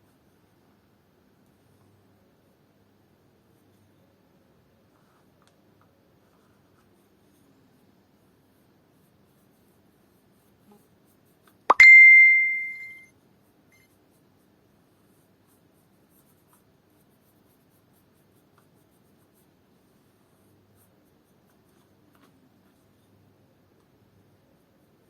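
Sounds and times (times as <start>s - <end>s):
bright ding: 11.7s - 13.1s.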